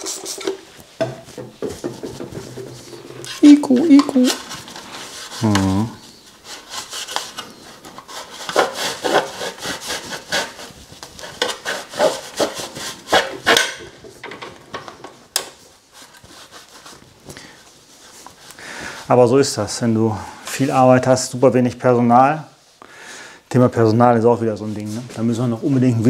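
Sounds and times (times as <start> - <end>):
cloth rubbing and wiping: 0.0 - 13.5, 15.6 - 20.0, 23.8 - 26.0.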